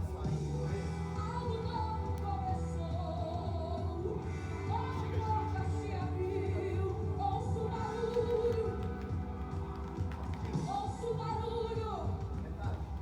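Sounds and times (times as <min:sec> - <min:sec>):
bass line: 0:00.0 - 0:12.6
person singing: 0:00.6 - 0:09.2.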